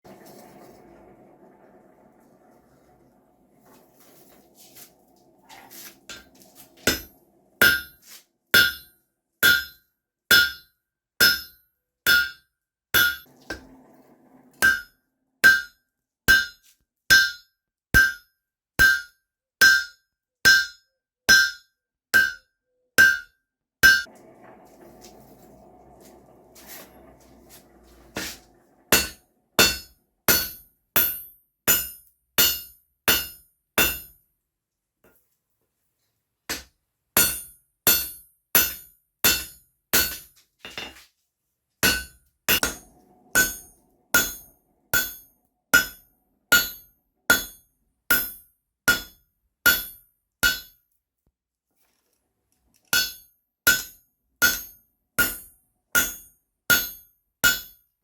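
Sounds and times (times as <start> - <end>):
hammer ringing on steel bar: 6.9 - 8.0, 8.6 - 12.4, 13.0 - 13.3, 14.6 - 24.1, 28.9 - 34.1, 41.8 - 50.8, 53.0 - 57.8.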